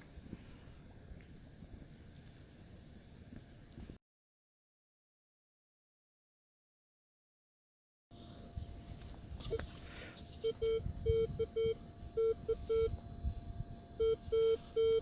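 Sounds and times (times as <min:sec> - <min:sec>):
metal detector beeps: 0:09.4 - 0:13.0, 0:14.0 - 0:15.0.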